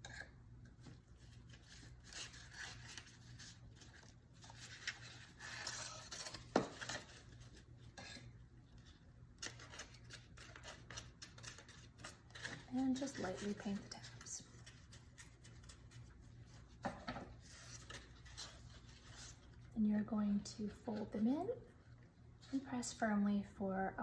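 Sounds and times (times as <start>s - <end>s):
gloved hands rubbing paper: 9.9s - 16.8s.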